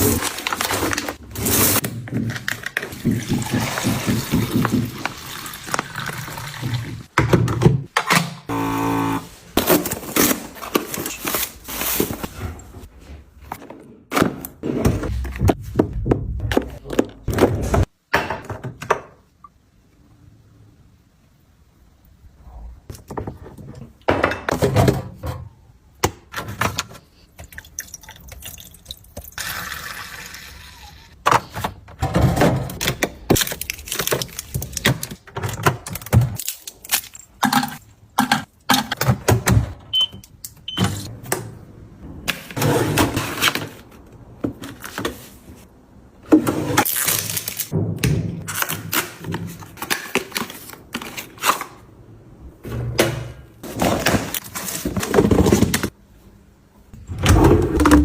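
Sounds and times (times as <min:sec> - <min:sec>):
objects knocking and rustling: 0:01.8 - 0:05.9, 0:09.5 - 0:19.3, 0:52.6 - 0:56.0.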